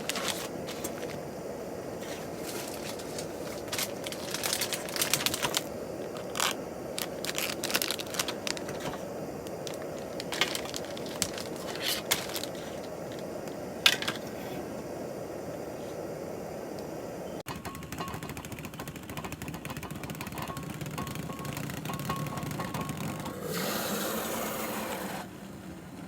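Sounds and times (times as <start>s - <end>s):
material crinkling: 0.0s - 1.2s, 2.0s - 13.2s
steady background hiss: 0.0s - 26.0s.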